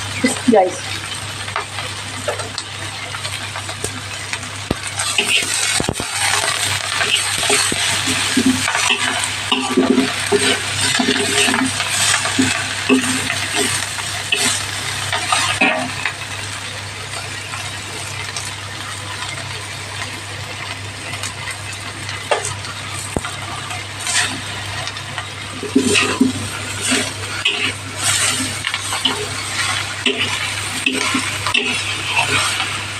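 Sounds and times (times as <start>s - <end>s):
leaves sizzling in a frying pan: 0.0s - 32.9s
spatula scraping a pan: 5.0s - 15.9s, 24.0s - 24.9s, 25.6s - 32.9s.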